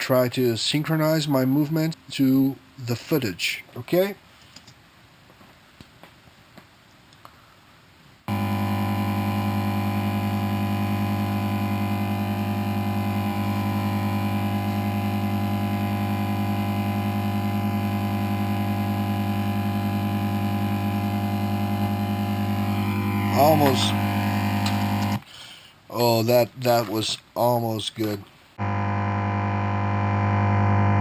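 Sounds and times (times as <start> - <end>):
electronic buzzing hum: 8.3 - 25.2, 28.6 - 31.0.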